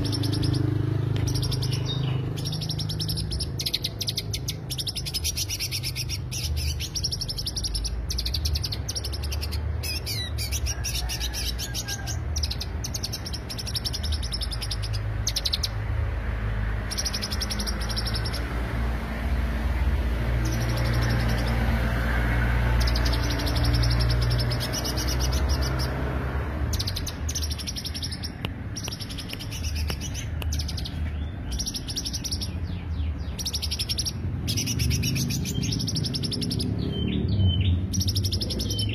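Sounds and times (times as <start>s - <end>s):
bird singing fast chirping trills: 0.0s - 38.9s.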